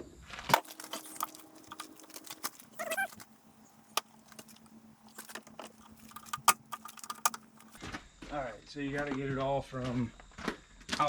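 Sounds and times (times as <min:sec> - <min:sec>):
brief squeak: 0:00.6 - 0:03.2
clicks and taps of small parts: 0:04.0 - 0:07.8.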